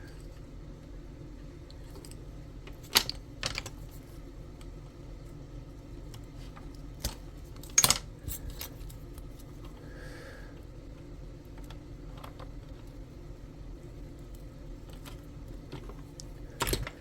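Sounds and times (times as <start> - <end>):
steady low hum: 0.0 - 17.0
metal tools clinking on workbench: 7.7 - 8.8.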